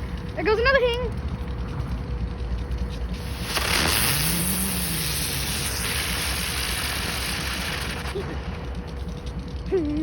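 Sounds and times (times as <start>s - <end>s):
ground firework hissing: 3.2s - 8.4s.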